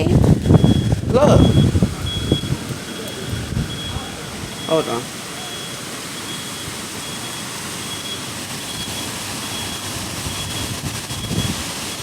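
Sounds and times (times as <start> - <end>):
heavy rain and wind: 0.0 - 12.0
faint high-pitched beep: 0.5 - 8.9.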